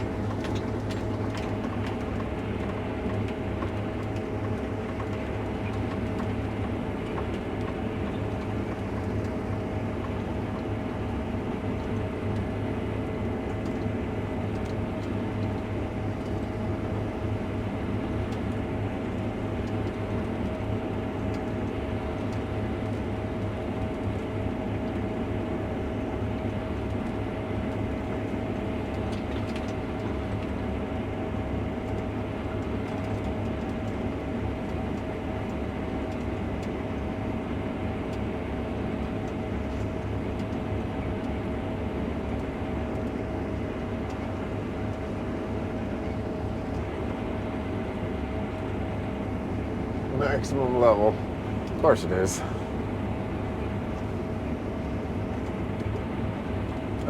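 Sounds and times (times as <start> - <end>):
combine engine and threshing drone: 0.0 - 57.0
steady whine: 36.0 - 57.0.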